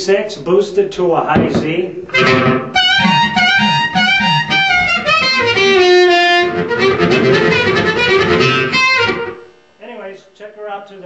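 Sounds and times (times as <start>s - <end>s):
distorted amplified harmonica: 1.5s - 10.0s.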